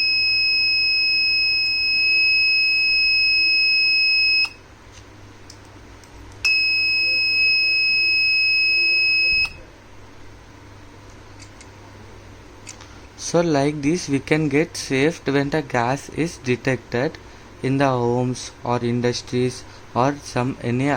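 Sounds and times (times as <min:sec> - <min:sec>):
high-pitched alarm buzzer: 0:00.0 - 0:04.6, 0:06.5 - 0:09.6.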